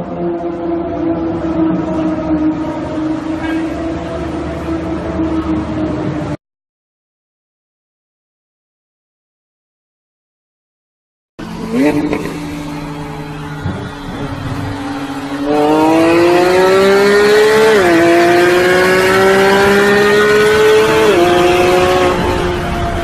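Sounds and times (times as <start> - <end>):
car engine accelerating: 0.0 - 6.4, 11.4 - 23.0.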